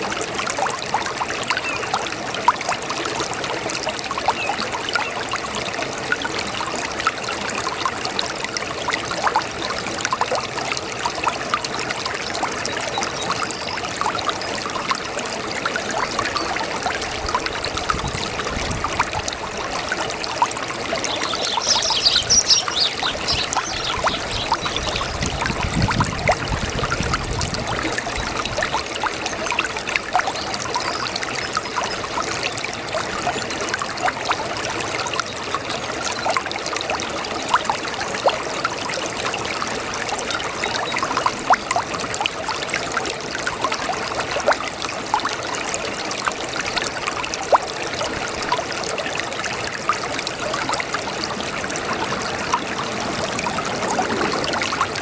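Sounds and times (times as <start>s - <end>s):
brook babbling over stones: 0.0s - 55.0s.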